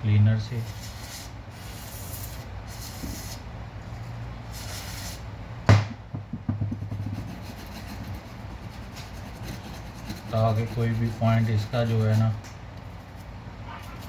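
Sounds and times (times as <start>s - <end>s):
sharp knock: 5.7s - 6.8s.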